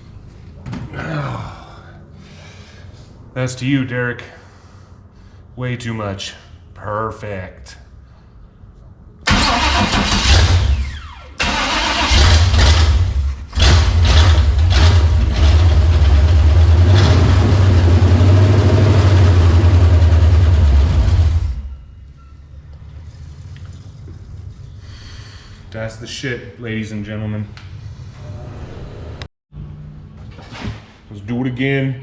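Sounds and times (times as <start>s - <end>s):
car engine starting and running: 9.2s - 21.9s.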